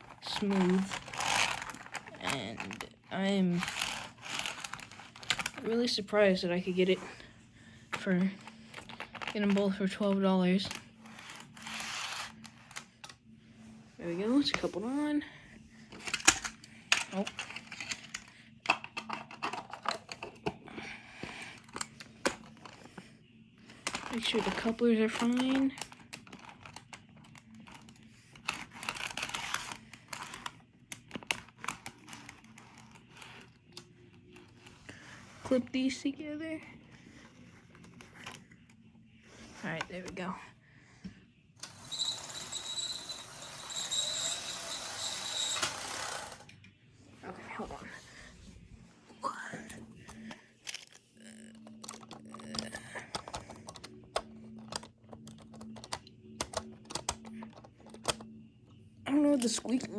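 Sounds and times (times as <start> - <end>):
model train cars clicking: 41.6 - 46.5.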